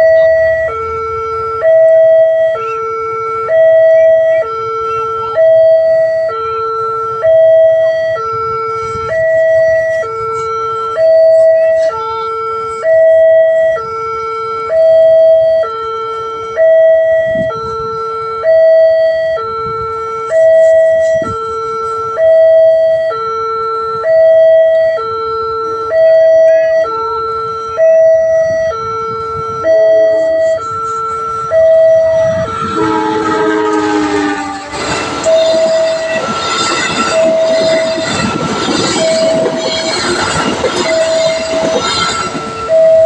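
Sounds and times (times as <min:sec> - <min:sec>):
level crossing two-tone alarm: 0:00.0 - 0:43.0
train rumble: 0:03.4 - 0:13.8, 0:19.2 - 0:23.1, 0:26.1 - 0:43.0.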